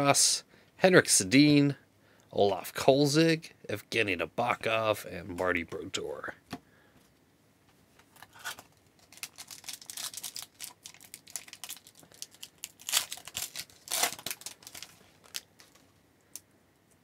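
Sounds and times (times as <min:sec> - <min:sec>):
wrapper crinkling and tearing: 0:08.3 - 0:15.8.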